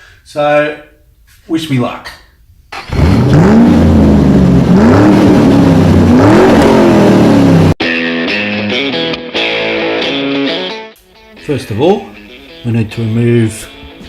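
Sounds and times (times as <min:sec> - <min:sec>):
engine revving: 0:02.8 - 0:07.8.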